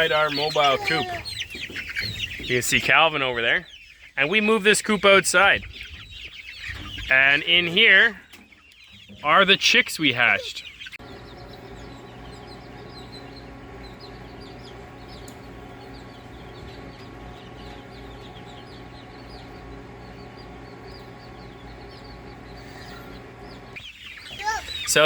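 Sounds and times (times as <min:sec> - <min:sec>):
chicks peeping: 0:00.0 - 0:25.0
steady low hum: 0:11.0 - 0:23.9.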